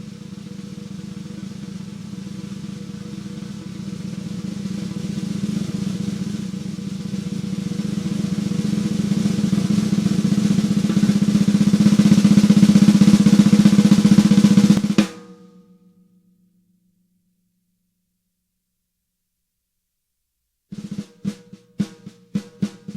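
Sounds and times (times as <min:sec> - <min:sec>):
snare drum hit: 0:00.0 - 0:15.5
snare drum roll: 0:00.0 - 0:15.6, 0:20.7 - 0:22.9
drum ring: 0:00.0 - 0:16.1.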